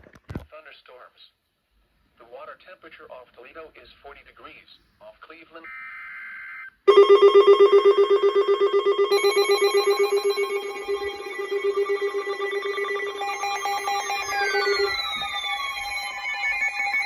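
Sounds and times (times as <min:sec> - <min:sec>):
higher alarm tone: 0:06.9 - 0:17.0
pulsing bell-like alarm ringing: 0:06.9 - 0:17.0
falling tone: 0:07.8 - 0:17.0.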